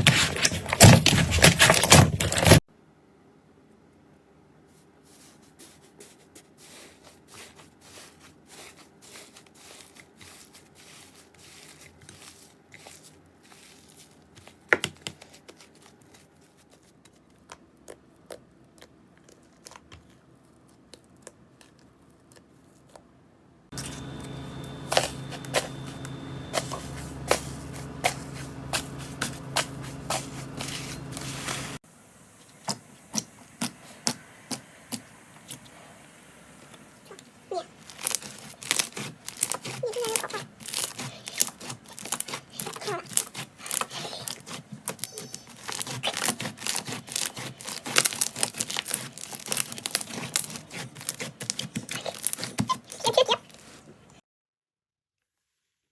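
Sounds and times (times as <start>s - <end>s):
slime squishing: 5.1s - 23.1s, 24.7s - 31.8s, 32.5s - 35.8s, 36.6s - 54.2s
steady hum: 23.7s - 37.8s.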